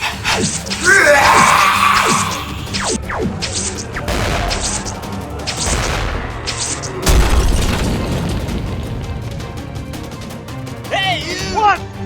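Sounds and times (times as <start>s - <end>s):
action soundtrack music: 0.0s - 12.0s
deep booming hit: 4.0s - 10.3s.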